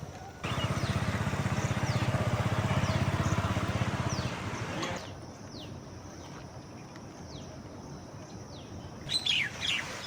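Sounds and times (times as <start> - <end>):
outdoor background hiss: 0.0 - 10.0
wild birds calling: 0.1 - 5.7, 8.6 - 10.0.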